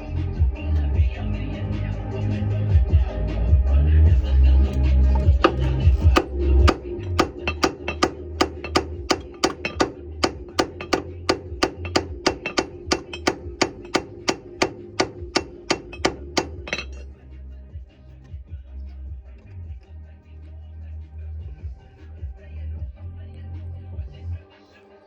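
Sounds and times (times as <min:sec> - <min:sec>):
music: 0:00.0 - 0:25.0
hammer striking steel hub: 0:04.7 - 0:17.1.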